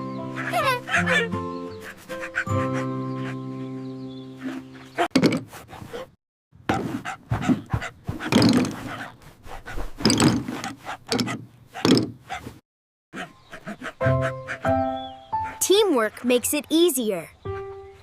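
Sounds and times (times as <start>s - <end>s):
knocks and thumps: 5.1s - 5.6s, 6.7s - 9.1s, 9.7s - 12.6s.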